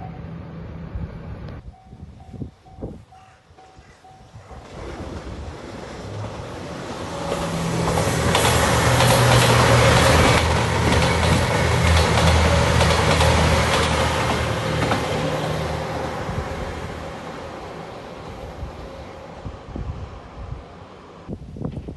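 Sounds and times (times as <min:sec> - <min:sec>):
diesel train engine drone: 0:00.0 - 0:21.4
train wheels clacking: 0:07.1 - 0:15.5.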